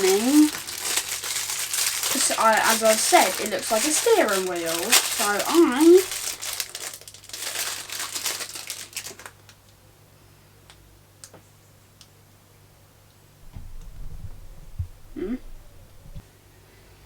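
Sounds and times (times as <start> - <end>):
plastic packaging crinkling: 0.0 - 9.8.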